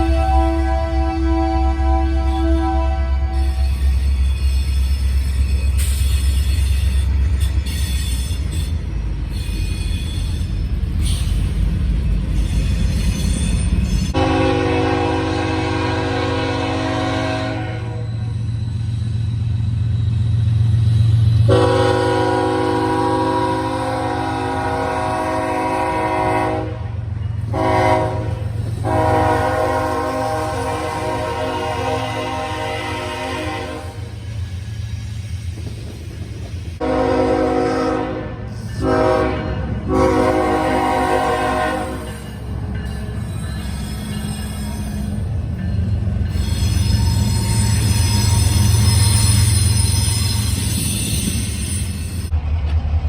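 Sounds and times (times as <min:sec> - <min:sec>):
locomotive horn: 0:00.0 - 0:03.7, 0:14.1 - 0:18.4, 0:21.4 - 0:34.2, 0:36.8 - 0:42.2
freight train rumbling: 0:00.0 - 0:53.0
wheel squeal: 0:03.3 - 0:11.6, 0:12.3 - 0:14.2, 0:46.2 - 0:52.3.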